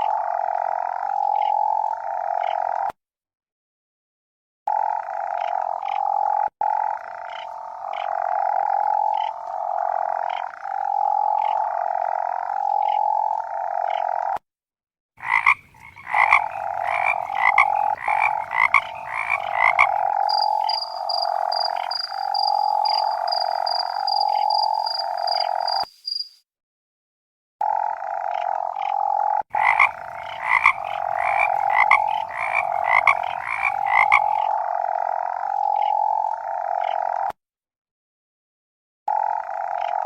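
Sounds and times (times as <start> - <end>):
frogs croaking: 0.0 - 2.8, 4.8 - 14.2, 15.2 - 26.4, 28.0 - 37.3, 39.2 - 40.0
higher sharper frog call: 15.2 - 26.4, 29.6 - 34.5
high fast pulsing chirp: 15.4 - 26.4, 29.6 - 34.3.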